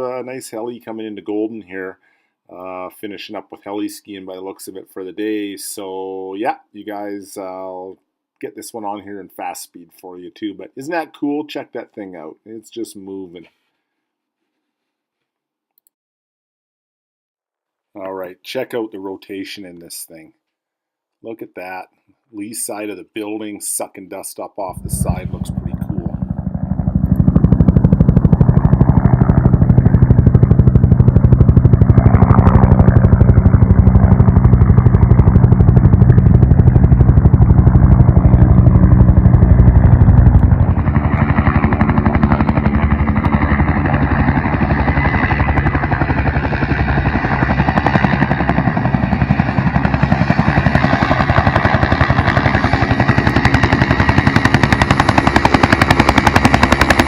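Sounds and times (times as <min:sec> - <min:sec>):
helicopter rotor chop: 0:24.8 - 0:57.0
high turbine whine: 0:24.8 - 0:57.0.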